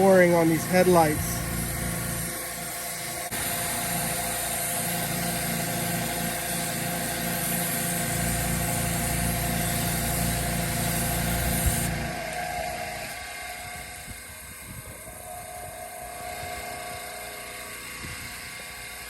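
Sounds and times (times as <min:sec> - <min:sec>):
engine droning: 0:08.1 - 0:19.0.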